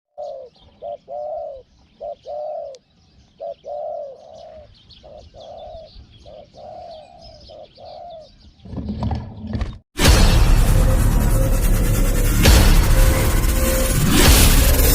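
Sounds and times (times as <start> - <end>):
small birds chirping: 0.1 - 9.8
dove cooing: 0.2 - 2.8, 3.4 - 8.4
loud music blast: 10.0 - 14.9.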